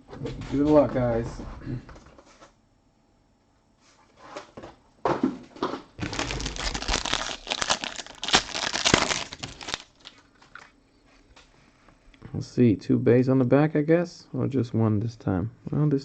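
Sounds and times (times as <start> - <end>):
packaging crinkling and tearing: 6.0 - 10.8.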